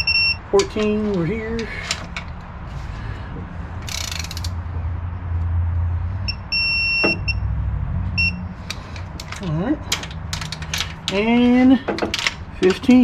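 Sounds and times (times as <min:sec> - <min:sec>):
torque wrench beeping: 0:00.0 - 0:00.8, 0:03.8 - 0:04.5, 0:06.3 - 0:07.4
wrench rasp: 0:03.8 - 0:04.6.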